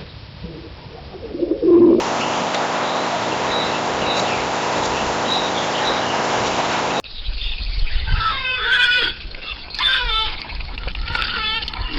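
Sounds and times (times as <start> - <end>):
bird calls rising and falling: 2.0 - 7.0
steady loud hiss: 2.0 - 7.0.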